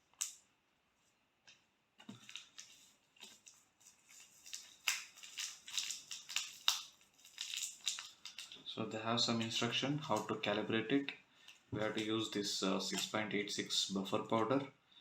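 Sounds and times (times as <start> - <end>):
paper crackling and rustling: 2.0 - 8.6.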